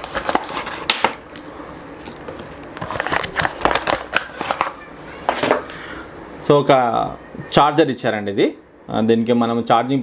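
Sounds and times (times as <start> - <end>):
packaging crackle: 0.0 - 5.5
packaging clicks and rustles: 0.0 - 5.6.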